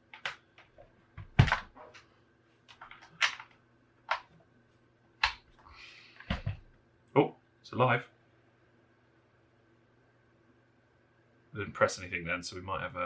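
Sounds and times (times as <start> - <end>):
plastic knocks and clicks: 0.1 - 2.0, 6.2 - 6.7.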